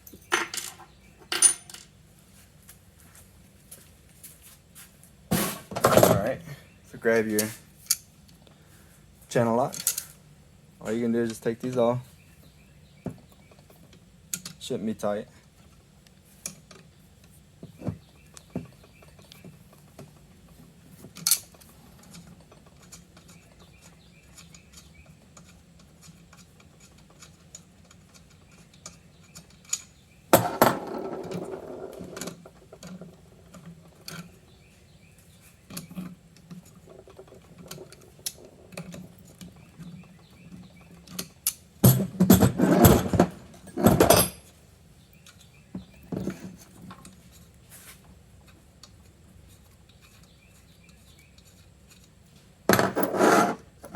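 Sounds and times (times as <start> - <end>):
metal parts clicking and clinking: 0.0 - 1.9, 9.6 - 10.2, 21.1 - 34.4, 35.7 - 47.5, 48.4 - 53.9.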